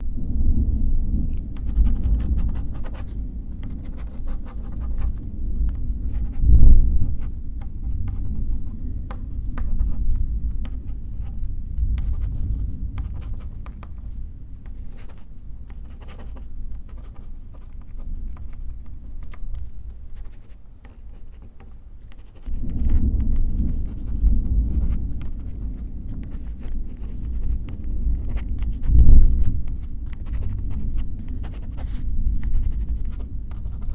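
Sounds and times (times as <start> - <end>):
distant thunder rumbling: 0.0 - 3.6, 22.5 - 30.1
pen scratching on paper: 1.3 - 33.9.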